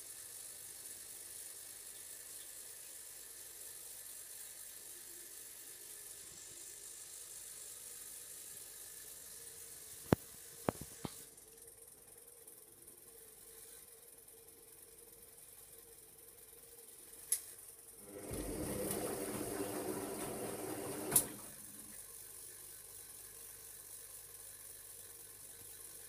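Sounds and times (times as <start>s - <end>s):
washing machine hiss: 0.0s - 11.4s, 18.0s - 25.6s
washing machine clicks: 18.2s - 21.6s.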